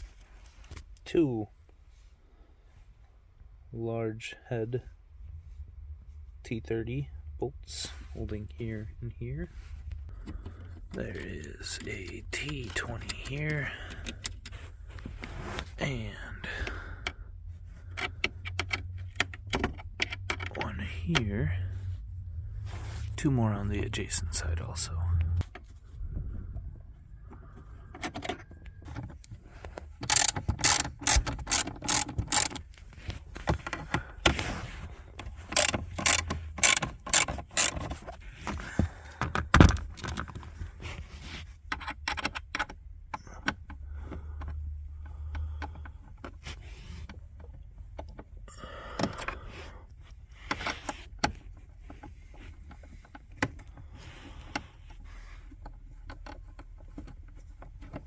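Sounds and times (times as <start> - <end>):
small clicks and handling noises: 9.8 - 15.8, 16.6 - 21.3, 27.2 - 58.0
ratchet clicking: 30.0 - 32.7, 35.5 - 37.9.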